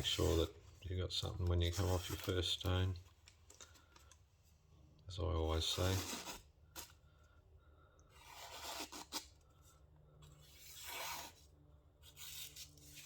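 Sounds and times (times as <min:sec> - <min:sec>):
knife sharpening on whetstone: 0:10.5 - 0:11.4.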